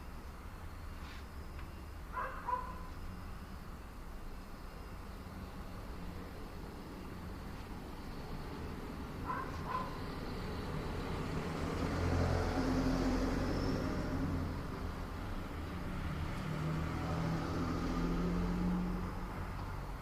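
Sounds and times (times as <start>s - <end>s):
vehicles passing: 5.2s - 20.0s.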